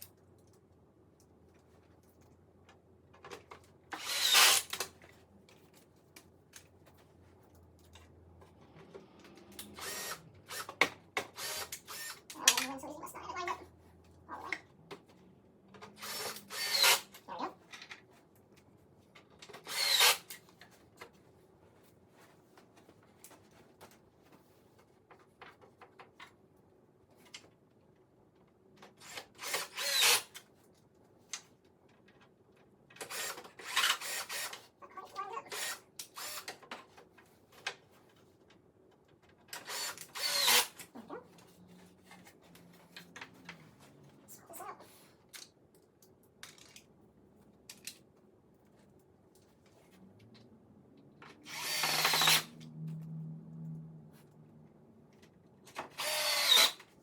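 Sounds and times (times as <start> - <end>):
cordless drill driving screws: 4.0 - 4.8, 9.6 - 12.3, 16.0 - 17.2, 19.6 - 20.3, 29.0 - 30.3, 33.0 - 34.6, 35.5 - 36.6, 39.6 - 40.8, 51.5 - 52.5, 55.9 - 56.8
handling parts and hardware: 44.9 - 50.5.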